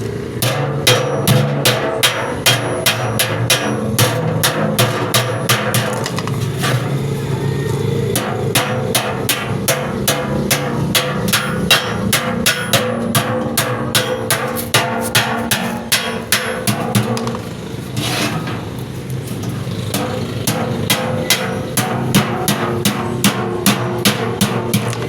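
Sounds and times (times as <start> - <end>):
hammer blows on metal anvil: 8.2 - 17.2, 19.9 - 25.0.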